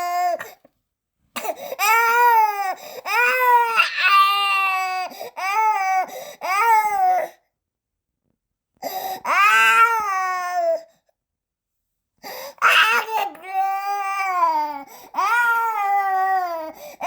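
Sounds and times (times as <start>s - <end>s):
newborn baby crying: 1.4s - 7.4s, 9.2s - 10.8s, 12.6s - 17.0s.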